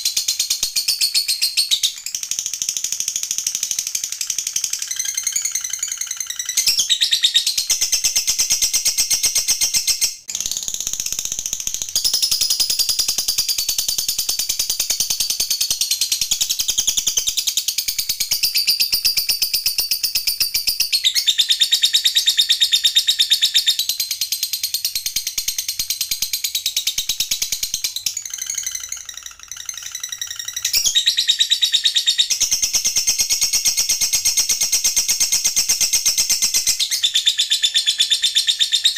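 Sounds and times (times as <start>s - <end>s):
lovebird rattling trill: 23.4s - 37.0s.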